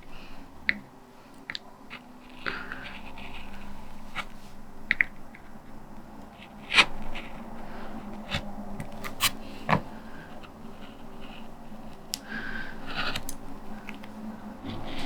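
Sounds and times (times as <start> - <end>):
lino cutter scraping: 14.6 - 15.0.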